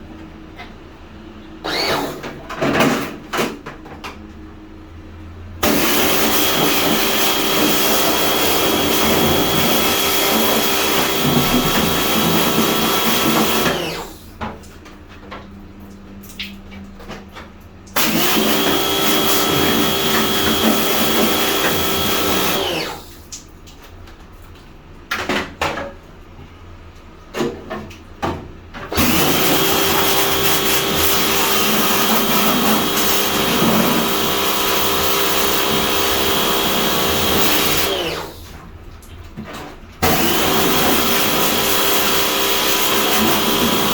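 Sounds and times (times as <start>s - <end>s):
electric machine whining with rushing air: 5.6s - 14.3s, 18.0s - 23.2s, 28.9s - 38.5s, 40.0s - 43.9s.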